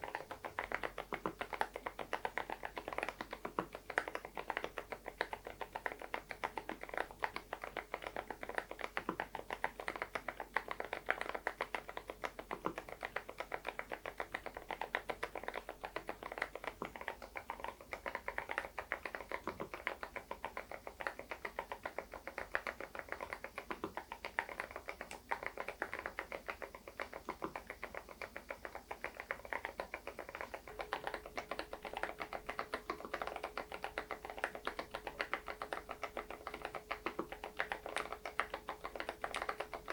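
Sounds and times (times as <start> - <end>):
keyboard typing: 0.0 - 39.9.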